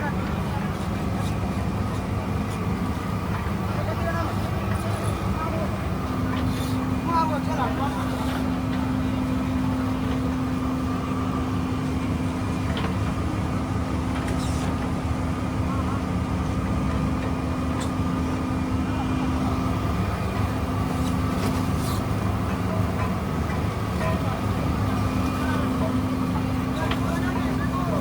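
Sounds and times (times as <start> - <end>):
boat engine running: 0.0 - 28.0.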